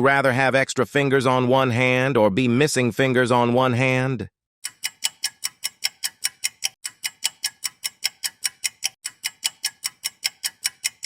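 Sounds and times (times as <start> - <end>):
fast clock ticking: 4.6 - 11.0.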